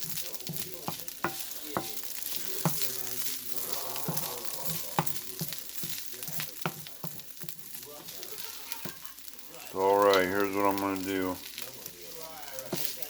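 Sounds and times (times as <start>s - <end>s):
utensil knocking against pan: 0.0s - 3.0s
food sizzling in a frying pan: 0.0s - 13.0s.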